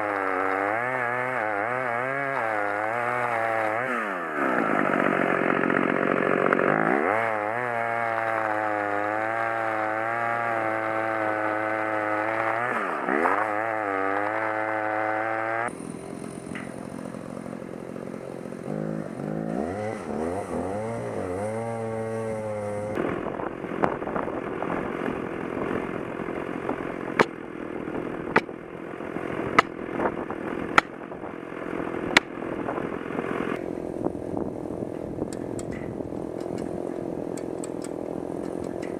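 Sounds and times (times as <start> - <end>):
chainsaw cutting wood: 0.0 - 34.2, 34.9 - 38.9
sharp cracks: 29.6 - 29.8.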